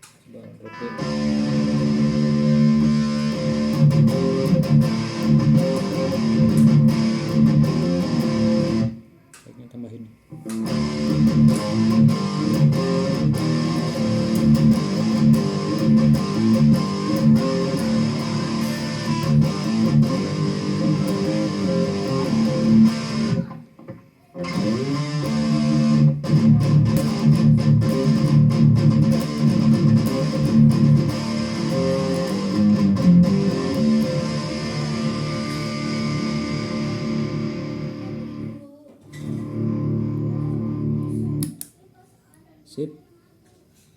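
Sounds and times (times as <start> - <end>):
distorted electric guitar riffing: 0.6 - 9.0, 10.5 - 23.7, 24.4 - 38.6, 39.2 - 41.4.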